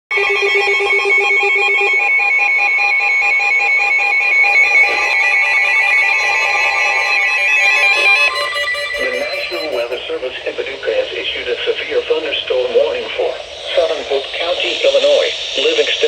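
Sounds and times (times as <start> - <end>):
warbling electronic alert tone: 0.2 - 10.5.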